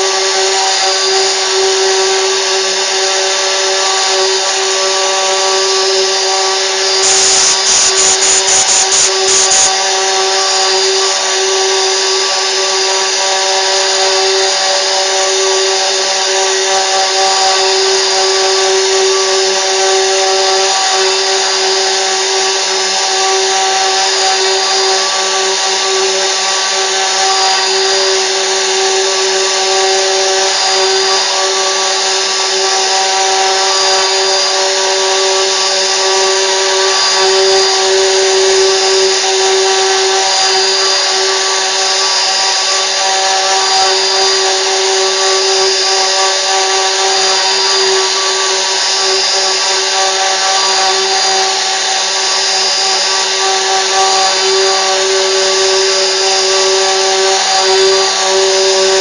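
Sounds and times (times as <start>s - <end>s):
router spindle whine: 0.0s - 59.0s
cutting hiss: 6.4s - 10.8s.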